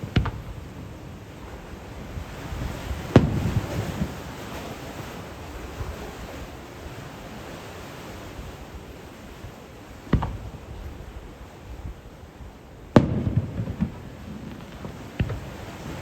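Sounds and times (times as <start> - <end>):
fireworks booming: 0.0 - 4.6, 10.1 - 10.7, 12.9 - 16.0
rumbling crackle: 0.0 - 4.9, 13.0 - 16.0.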